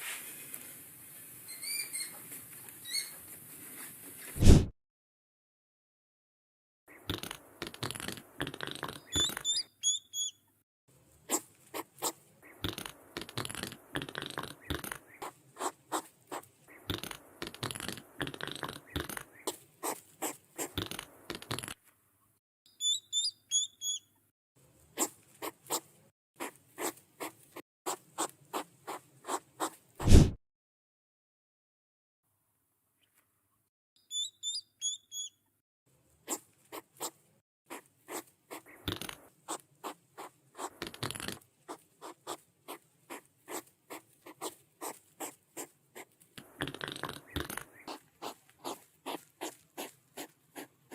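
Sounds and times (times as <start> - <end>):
hedgehog huffing and clicking: 7.0 - 9.6, 11.3 - 21.8, 25.0 - 29.8, 36.3 - 50.9
small high chirps: 8.8 - 10.5, 22.7 - 24.2, 34.0 - 35.5.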